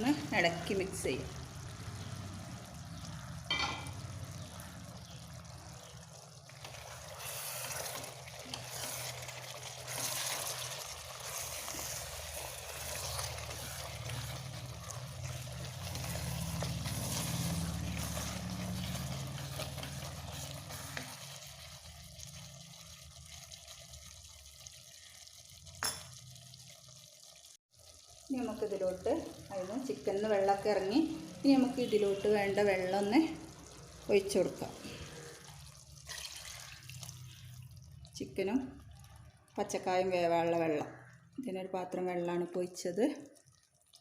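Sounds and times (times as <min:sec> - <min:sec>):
food sizzling: 0:00.0 - 0:41.1
spoon stirring in pot: 0:06.5 - 0:21.6.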